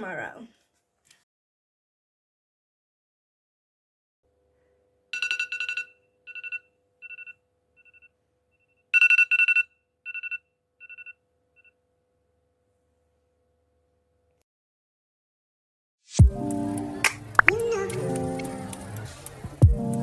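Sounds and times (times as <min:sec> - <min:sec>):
electronic telephone ringtone: 0:05.2 - 0:11.7.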